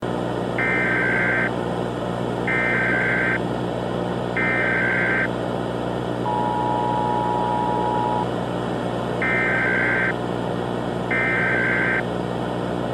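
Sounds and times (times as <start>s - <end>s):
data bursts: 0.6s - 1.5s, 2.5s - 3.4s, 4.4s - 5.3s, 6.3s - 8.3s, 9.2s - 10.1s, 11.1s - 12.0s
two-tone attention signal: 0.6s - 1.5s, 2.5s - 3.4s, 4.4s - 5.3s, 6.3s - 8.3s, 9.2s - 10.1s, 11.1s - 12.0s
low hum: 6.2s - 8.4s.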